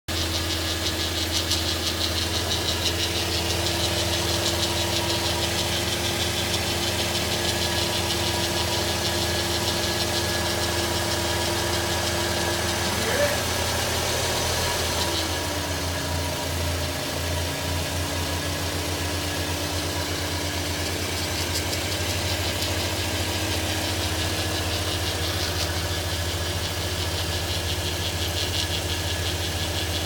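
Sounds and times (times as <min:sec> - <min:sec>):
fast high ticking: 0:00.1 - 0:13.6
car engine idling: 0:00.1 - 0:30.0.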